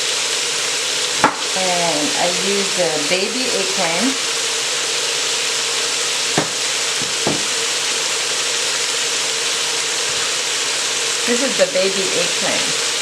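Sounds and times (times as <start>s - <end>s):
food sizzling in oil: 0.0s - 13.0s
short knocks: 6.4s - 7.5s.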